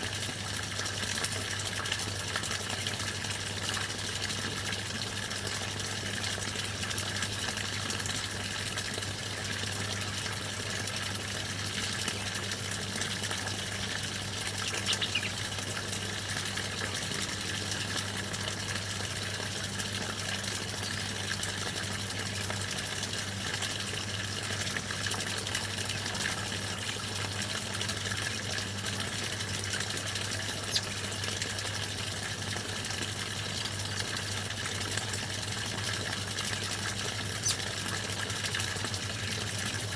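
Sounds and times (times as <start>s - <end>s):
running water: 0.0s - 39.9s
faint bird chirps: 14.6s - 15.4s, 30.7s - 31.0s, 37.4s - 37.6s.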